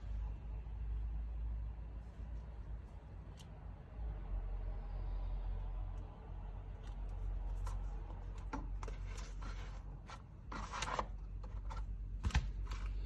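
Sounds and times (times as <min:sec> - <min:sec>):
steady low hum: 0:00.0 - 0:13.0
scrapes and clicks of handling: 0:06.8 - 0:13.0.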